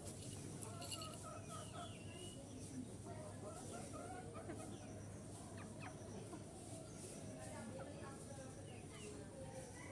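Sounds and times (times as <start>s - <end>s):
chickens clucking: 3.4s - 6.8s.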